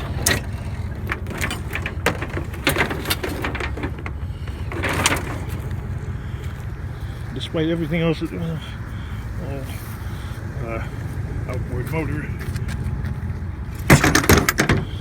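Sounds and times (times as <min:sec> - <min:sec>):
short clatters and knocks: 0:00.0 - 0:06.5, 0:12.4 - 0:15.0
steady low rumble: 0:00.0 - 0:15.0.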